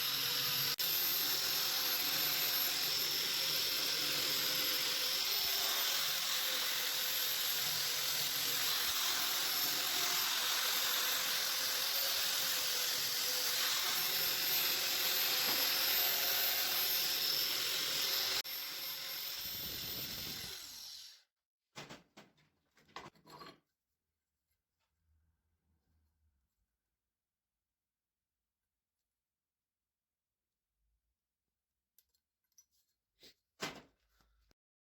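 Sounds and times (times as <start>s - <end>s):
sanding machine grinding wood: 0.0s - 21.0s.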